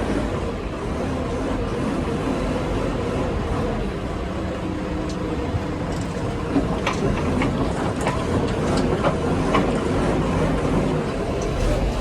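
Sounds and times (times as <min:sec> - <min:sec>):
diesel machinery running: 0:05.4 - 0:12.0.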